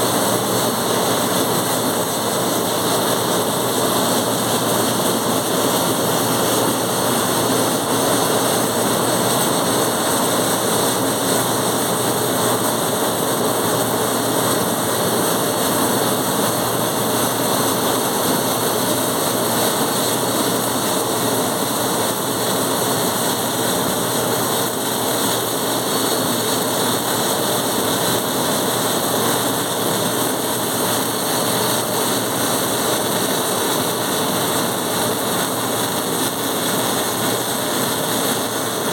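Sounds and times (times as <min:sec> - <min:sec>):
welding arc hissing: 0:16.1 - 0:38.9.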